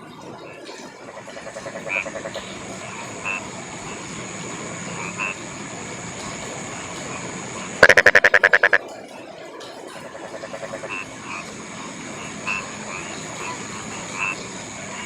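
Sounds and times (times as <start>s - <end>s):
frogs croaking: 0.4s - 8.9s, 9.9s - 15.0s
rain hiss: 0.7s - 8.8s, 9.7s - 15.0s
thin high steady tone: 7.4s - 8.8s.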